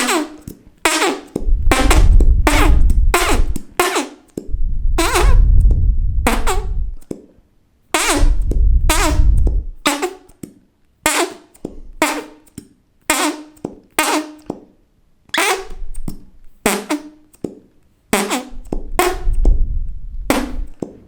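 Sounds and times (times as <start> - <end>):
fart sound effects: 0.0 - 7.0, 8.0 - 10.3, 11.1 - 12.4, 13.1 - 14.4, 15.3 - 17.2, 18.1 - 20.8.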